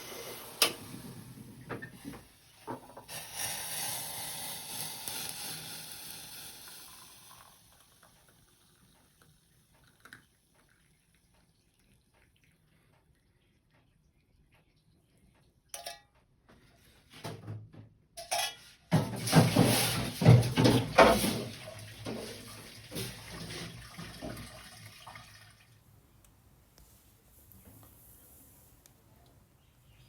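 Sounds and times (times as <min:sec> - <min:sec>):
tap water running: 0:00.0 - 0:15.7, 0:18.9 - 0:26.0
dishes clattering in sink: 0:15.8 - 0:16.2, 0:18.2 - 0:24.6.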